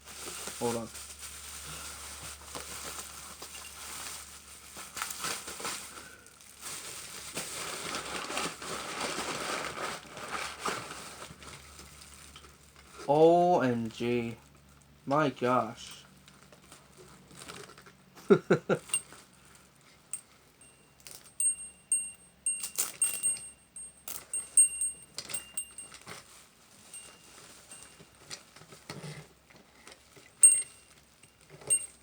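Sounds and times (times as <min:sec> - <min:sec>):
plastic and packaging rustling: 0:00.0 - 0:15.0, 0:15.6 - 0:18.1, 0:18.7 - 0:32.0
small metal bell jingling: 0:18.8 - 0:19.2, 0:20.1 - 0:28.3, 0:30.3 - 0:32.0.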